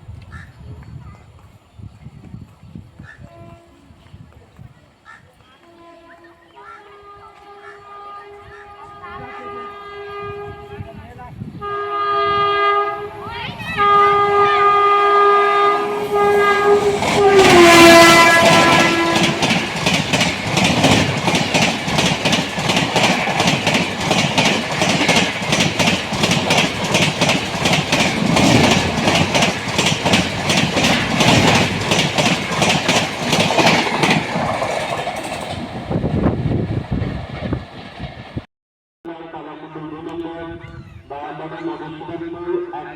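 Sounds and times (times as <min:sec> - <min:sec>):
train horn: 0:03.2 - 0:04.0, 0:05.6 - 0:19.9
train wheels clickety-clack: 0:16.4 - 0:36.3.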